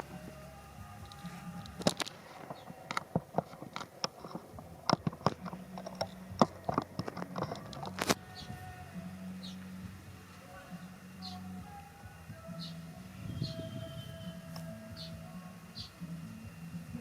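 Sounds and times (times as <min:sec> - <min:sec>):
low steady hum: 0:00.0 - 0:17.0
sharp clicks and crunches: 0:01.0 - 0:08.5.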